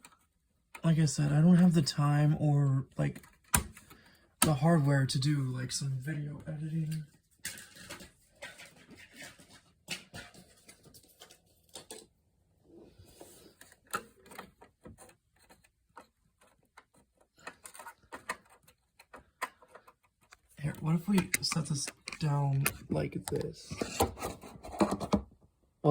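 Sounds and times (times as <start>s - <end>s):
hands handling parts: 13.1s - 25.2s.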